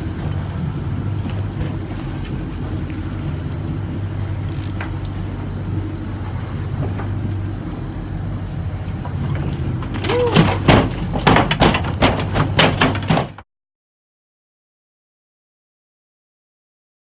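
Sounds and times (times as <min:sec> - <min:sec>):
boat engine droning: 0:00.0 - 0:13.4.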